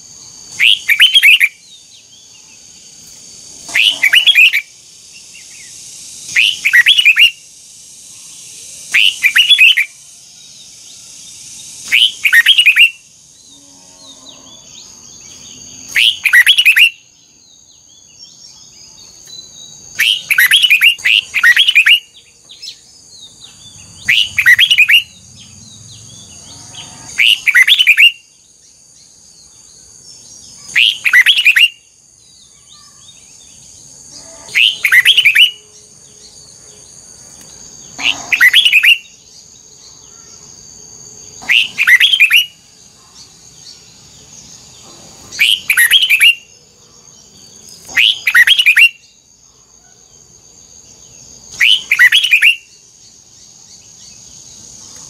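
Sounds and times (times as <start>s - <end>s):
bird singing whistled phrases: 0.6s - 1.6s, 3.7s - 4.7s, 6.3s - 7.4s, 8.9s - 10.0s, 11.9s - 13.0s, 15.9s - 17.0s, 19.4s - 22.8s, 24.0s - 25.1s, 27.2s - 28.2s, 30.6s - 31.9s, 34.5s - 35.7s, 38.2s - 39.1s, 41.5s - 42.6s, 45.4s - 46.5s, 48.0s - 49.0s, 51.6s - 52.7s.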